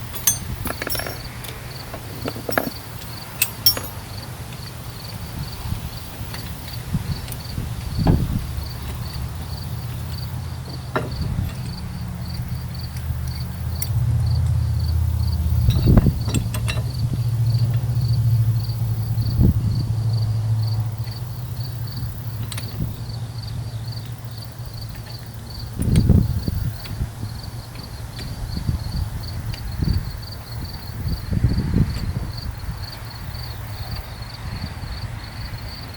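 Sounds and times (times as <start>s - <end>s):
insects chirping: 0.0s - 35.9s.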